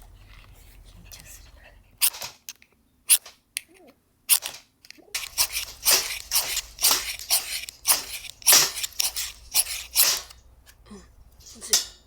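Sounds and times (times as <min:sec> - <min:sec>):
fire-starter rod scraped with striker: 0:02.0 - 0:02.3, 0:05.2 - 0:10.8.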